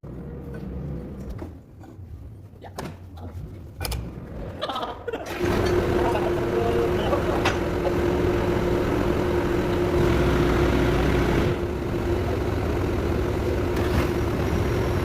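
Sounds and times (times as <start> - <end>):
constant hum: 0.0 - 15.0
heavy vehicle engine idling: 5.3 - 15.0.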